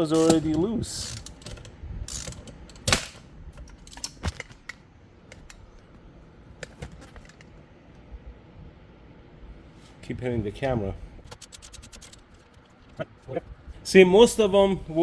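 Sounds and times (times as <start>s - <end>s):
ratchet metallic clicks: 0.0s - 3.1s, 11.3s - 12.6s.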